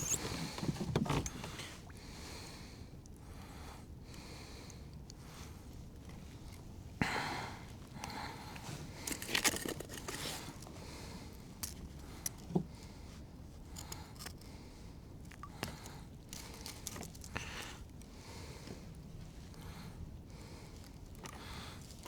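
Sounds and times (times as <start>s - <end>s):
brief low squeak: 0.0s - 0.4s
hands handling fishing tackle: 8.8s - 10.8s, 15.2s - 18.0s.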